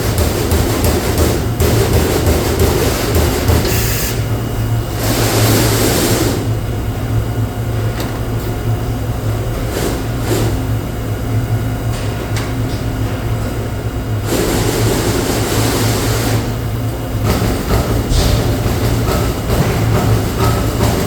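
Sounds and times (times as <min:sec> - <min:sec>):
punch machine humming: 0:00.0 - 0:21.0
machine hiss: 0:02.8 - 0:06.4.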